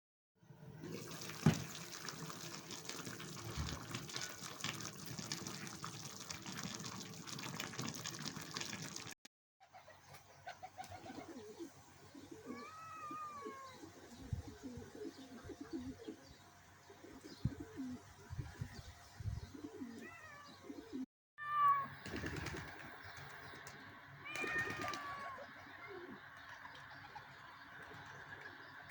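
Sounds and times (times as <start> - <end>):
pigeons cooing: 9.8 - 18.1, 19.4 - 21.0
cat meowing: 12.5 - 13.8, 20.0 - 20.5, 21.4 - 21.9, 24.3 - 25.4.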